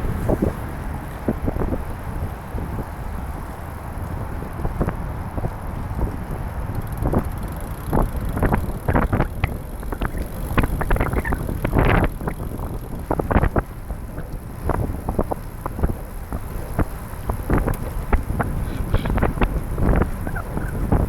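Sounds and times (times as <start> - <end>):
wind rumbling on microphone: 0.0 - 21.0
sharp taps and clatters: 6.7 - 14.5.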